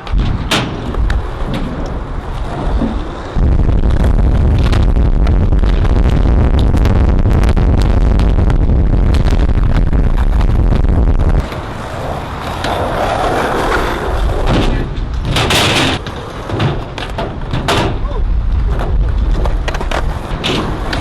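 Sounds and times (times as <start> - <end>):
skateboard wheels rolling on concrete: 0.0 - 21.0
skateboard clacking: 11.4 - 21.0.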